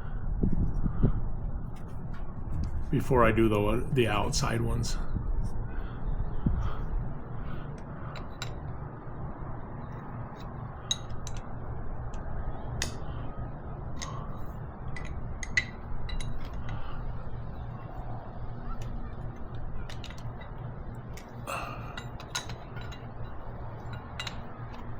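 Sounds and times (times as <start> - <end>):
steady low hum: 0.0 - 24.9.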